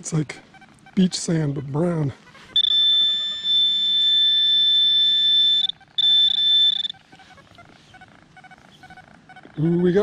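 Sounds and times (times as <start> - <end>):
rapid beeping: 2.5 - 7.0
high-pitched alarm tone: 2.6 - 7.0.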